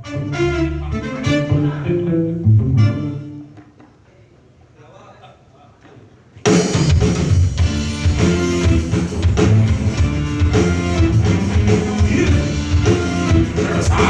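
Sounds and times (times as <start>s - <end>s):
heavy bass line: 0.0s - 3.4s, 7.4s - 14.0s
guitar: 0.0s - 3.8s, 6.7s - 14.0s
drums: 6.4s - 14.0s
person singing: 11.1s - 14.0s.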